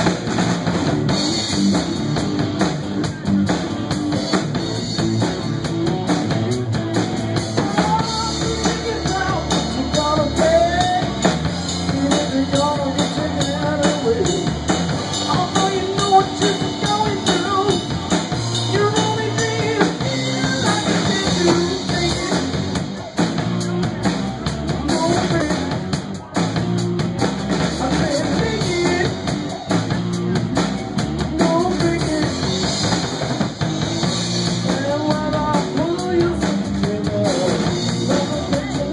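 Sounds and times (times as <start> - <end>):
drum kit: 0.0 - 38.9
guitar: 0.0 - 38.9
live rock band playing: 0.0 - 38.9
person singing: 7.4 - 26.4, 27.6 - 32.9, 34.4 - 38.9.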